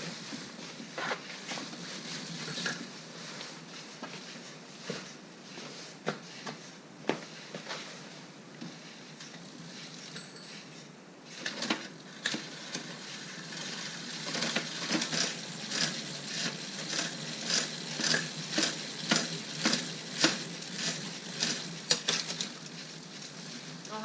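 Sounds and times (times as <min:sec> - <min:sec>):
bicycle chain over sprockets: 0:11.4 - 0:23.7.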